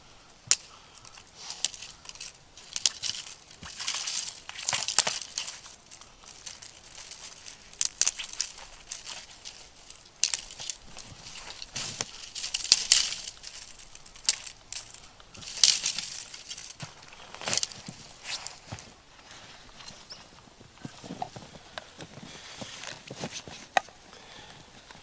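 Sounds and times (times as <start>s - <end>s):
snow crunching: 1.4s - 25.0s.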